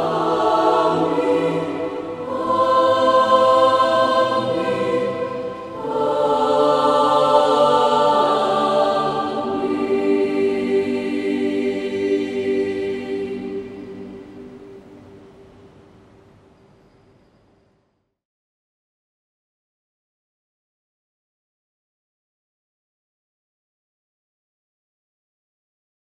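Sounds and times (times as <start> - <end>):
choir singing held chords: 0.0 - 15.9.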